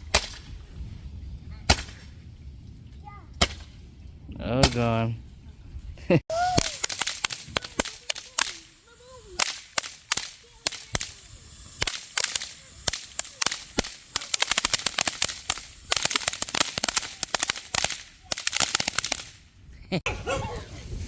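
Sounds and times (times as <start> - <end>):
fireworks crackling: 6.1 - 19.7.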